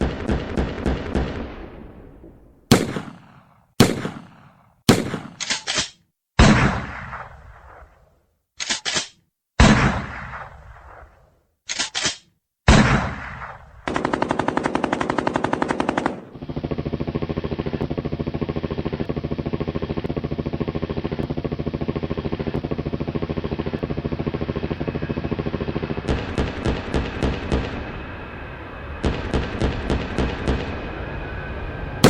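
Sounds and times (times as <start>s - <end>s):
rapid machine-gun fire: 0.0s - 1.5s, 2.7s - 5.4s, 13.9s - 21.1s
gunshots: 0.0s - 7.9s, 8.7s - 11.1s.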